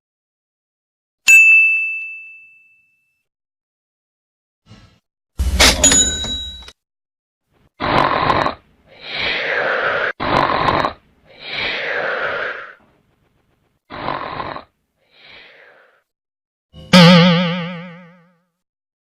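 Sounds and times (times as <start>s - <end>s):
comic snoring: 7.8s - 12.8s, 13.9s - 16.1s.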